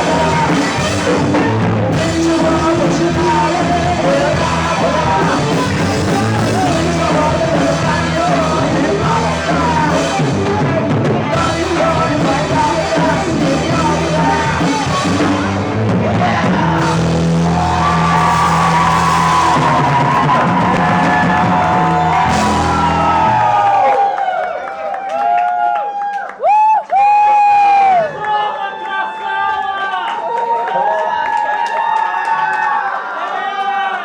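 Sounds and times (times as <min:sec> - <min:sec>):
person singing: 0:00.0 - 0:23.9
rock band playing live: 0:00.0 - 0:24.0.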